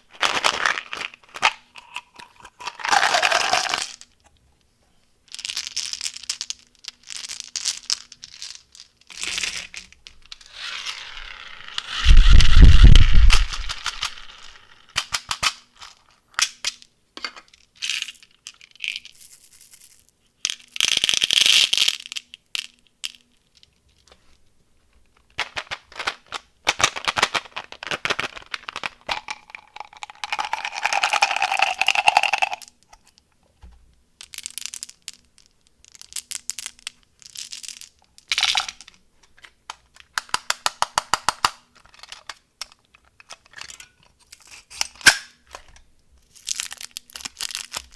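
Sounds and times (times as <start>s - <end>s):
plastic wrappers crinkling and tearing: 0.0s - 3.9s, 9.2s - 14.6s, 25.6s - 30.3s, 46.2s - 47.9s.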